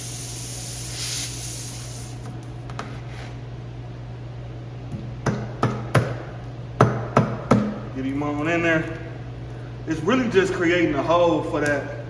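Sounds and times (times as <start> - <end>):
air hissing from tire: 0.0 - 2.4.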